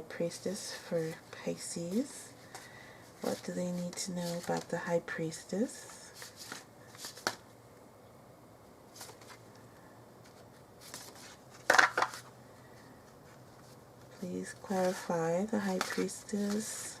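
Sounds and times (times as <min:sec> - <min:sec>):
cards being shuffled: 0:01.8 - 0:04.7, 0:05.9 - 0:07.4, 0:08.9 - 0:09.5, 0:10.2 - 0:12.3, 0:13.1 - 0:17.0.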